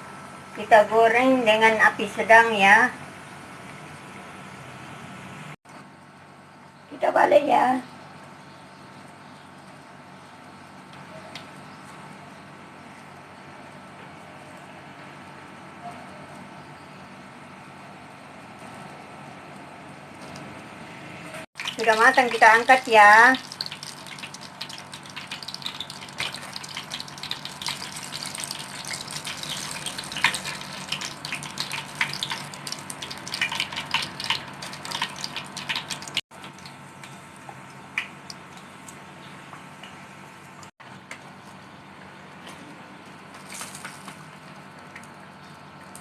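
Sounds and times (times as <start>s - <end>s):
oil sizzling and crackling: 21.6s - 39.0s, 43.2s - 45.2s.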